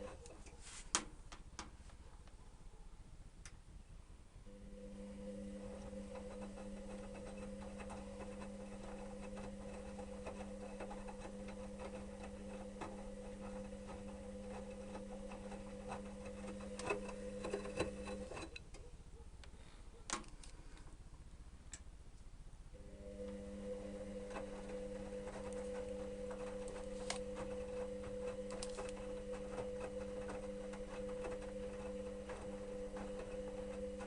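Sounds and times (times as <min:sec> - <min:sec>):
washing machine motor humming: 0:00.0 - 0:00.5, 0:04.5 - 0:18.6, 0:22.8 - 0:34.0.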